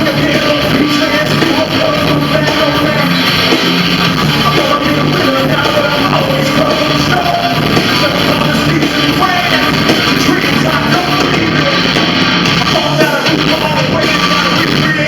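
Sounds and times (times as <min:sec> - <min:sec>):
live rock band playing: 0:00.0 - 0:15.0
person singing: 0:00.0 - 0:15.0.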